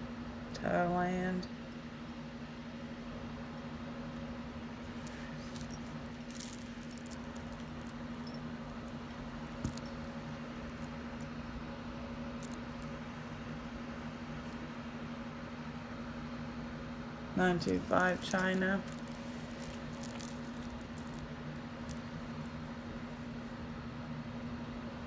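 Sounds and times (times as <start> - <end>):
steady low hum: 3.2 - 24.5
metal jewelry clinking: 4.9 - 11.6, 12.3 - 13.0, 17.6 - 23.2.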